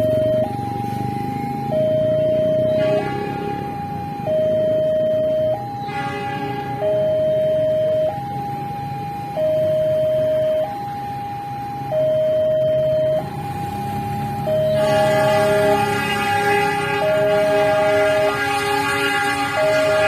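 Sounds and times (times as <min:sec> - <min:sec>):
level crossing two-tone alarm: 0:00.0 - 0:20.0
train horn blast: 0:02.7 - 0:03.8, 0:05.8 - 0:07.0, 0:14.8 - 0:20.0.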